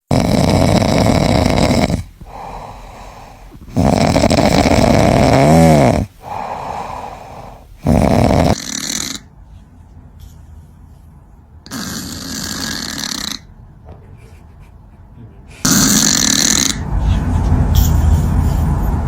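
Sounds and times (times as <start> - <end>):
cat snoring: 0.0 - 9.3, 11.7 - 13.5, 15.6 - 16.9
snore whistle: 3.7 - 6.6, 15.7 - 16.8.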